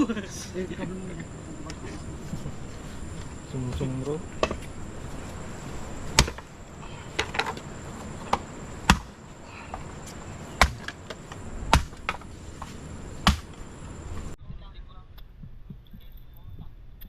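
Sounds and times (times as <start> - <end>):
high insect drone: 0.0 - 14.4
sharp chopping knocks: 6.2 - 6.5, 8.3 - 9.2, 10.6 - 11.1, 11.7 - 12.3, 13.2 - 13.6.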